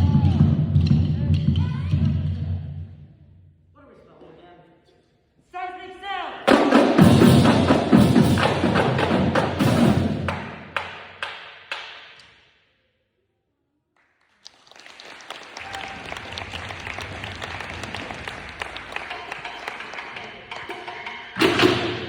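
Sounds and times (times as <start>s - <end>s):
drumline playing: 6.4s - 11.3s, 15.8s - 22.0s.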